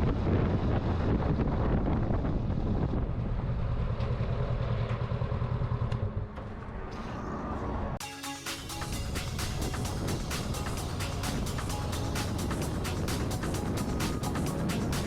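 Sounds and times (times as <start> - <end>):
wind noise on microphone: 0.0 - 4.0, 8.8 - 15.0
motorcycle engine running: 0.0 - 6.6, 8.8 - 15.0.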